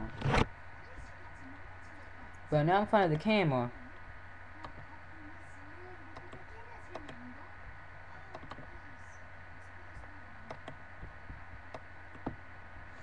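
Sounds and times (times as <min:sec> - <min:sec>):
steady low hum: 0:00.0 - 0:13.0
keyboard keystroke clicks: 0:08.3 - 0:08.7, 0:10.5 - 0:11.1, 0:11.7 - 0:12.4.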